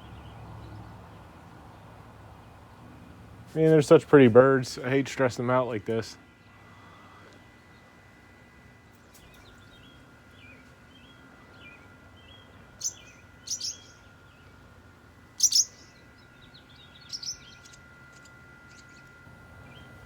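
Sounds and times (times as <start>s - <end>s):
swallows twittering: 9.2s - 14.6s, 15.4s - 19.1s
sharp high bird calls: 12.8s - 14.1s, 15.4s - 19.1s.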